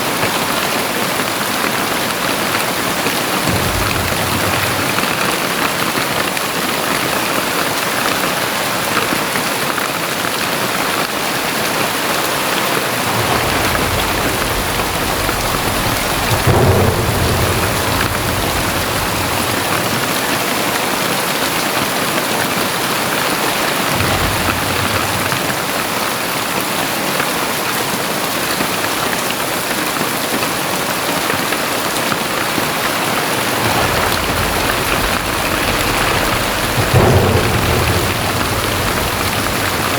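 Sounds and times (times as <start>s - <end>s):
heavy rain pouring: 0.0s - 39.9s
thunder rumbling: 1.5s - 7.6s, 12.3s - 27.2s, 31.8s - 39.9s.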